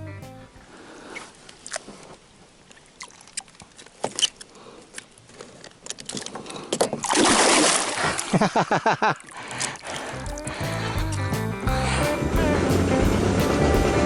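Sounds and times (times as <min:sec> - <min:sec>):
faint trickling water: 0:01.0 - 0:07.2.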